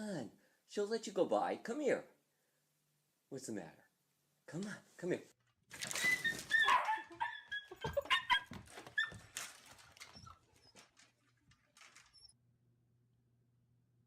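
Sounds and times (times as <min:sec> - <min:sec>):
dog whining: 0:06.0 - 0:09.3.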